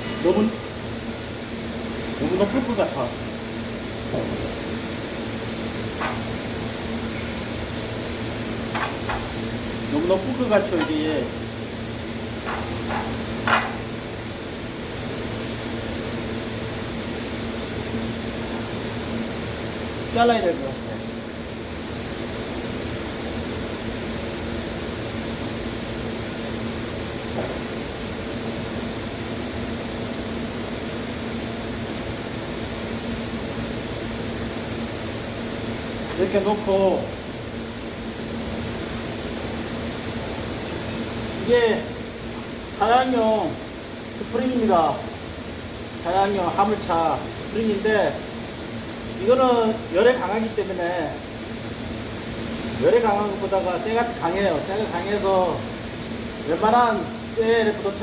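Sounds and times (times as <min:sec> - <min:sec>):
low electrical hum: 0:00.0 - 0:58.0.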